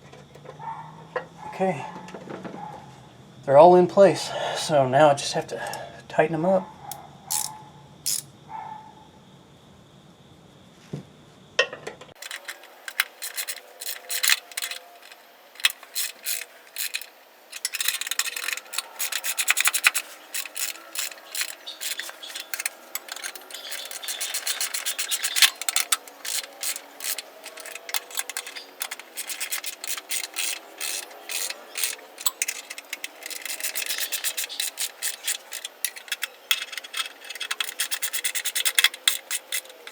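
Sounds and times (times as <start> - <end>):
ratchet wrench clicking: 7.3 - 7.5, 8.1 - 8.3, 12.2 - 39.9.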